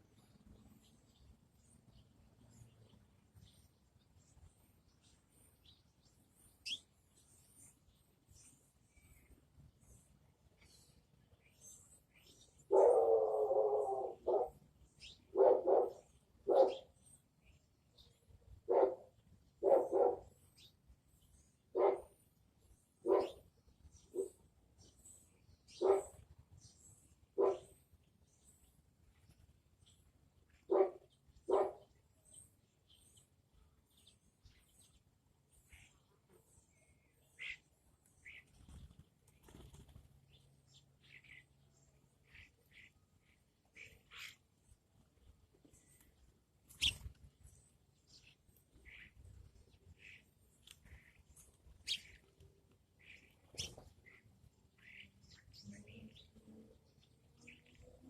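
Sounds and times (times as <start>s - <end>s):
small birds chirping: 0.0s - 58.0s
dog barks: 12.7s - 14.6s, 15.3s - 16.9s, 18.7s - 20.3s, 21.7s - 22.1s, 23.0s - 23.4s, 25.8s - 26.2s, 27.4s - 27.7s, 30.7s - 31.9s.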